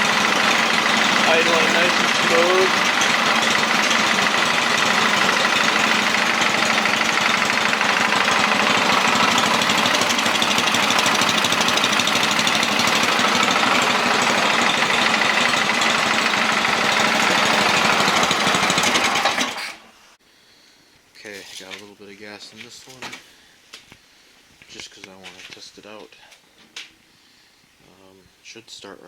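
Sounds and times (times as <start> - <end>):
snowblower engine idling: 0.0 - 20.2.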